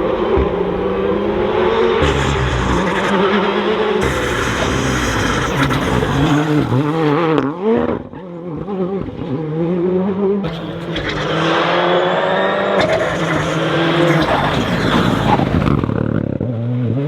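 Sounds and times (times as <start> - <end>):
car engine revving hard: 0.0 - 7.7, 10.5 - 16.6.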